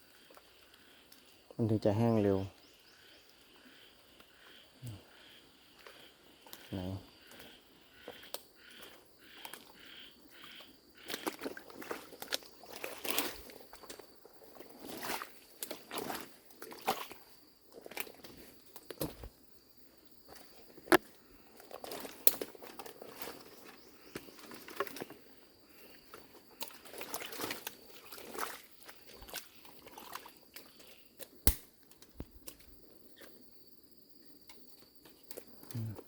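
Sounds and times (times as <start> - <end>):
footsteps on wet ground: 11.1 - 19.3, 25.9 - 30.9
sharp clicks: 31.5 - 32.6.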